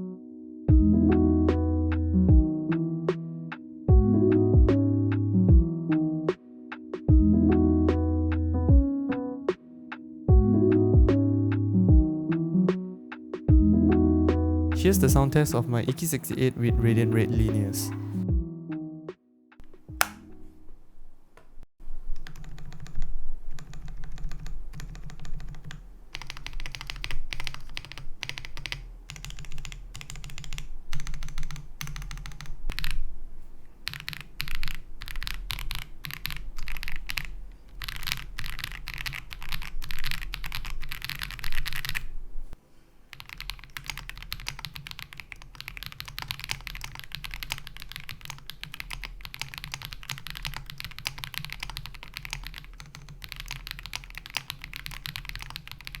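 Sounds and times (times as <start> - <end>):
mechanical keyboard typing: 22.1 - 33.0, 33.8 - 42.1, 43.1 - 56.0.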